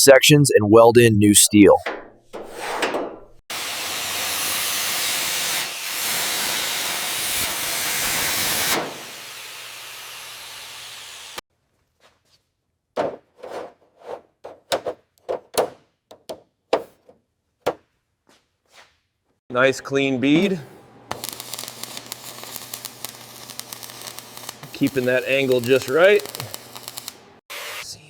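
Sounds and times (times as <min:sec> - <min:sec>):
metal cutting tool hiss: 0:03.5 - 0:11.4, 0:21.2 - 0:27.8.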